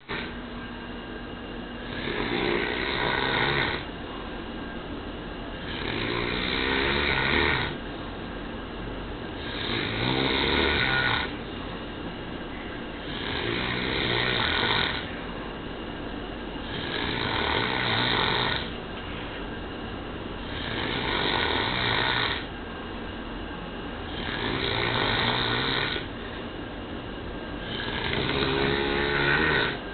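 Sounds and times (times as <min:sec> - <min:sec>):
man snoring: 0:00.0 - 0:00.4, 0:01.8 - 0:03.9, 0:05.6 - 0:07.8, 0:09.4 - 0:11.4, 0:13.0 - 0:15.1, 0:16.6 - 0:18.7, 0:20.4 - 0:22.5, 0:24.1 - 0:26.1, 0:27.6 - 0:29.8.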